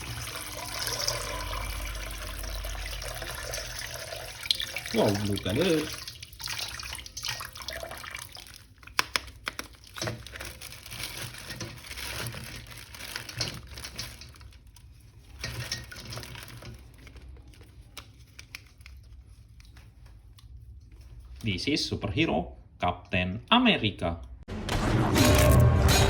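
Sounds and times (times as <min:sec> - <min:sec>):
water splashing and trickling: 0:00.0 - 0:09.0.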